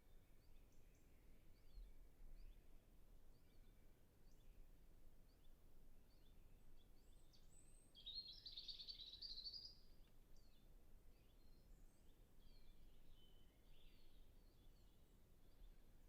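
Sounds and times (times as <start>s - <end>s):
faint birdsong: 0.0s - 16.0s.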